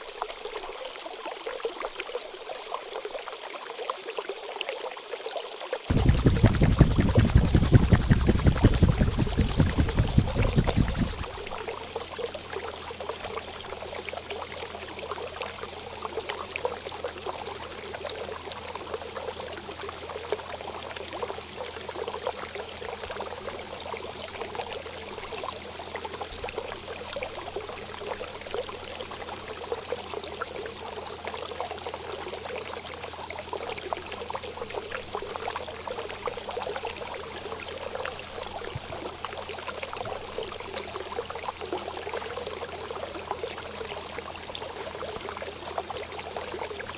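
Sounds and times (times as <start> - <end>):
water running: 5.9 - 11.5.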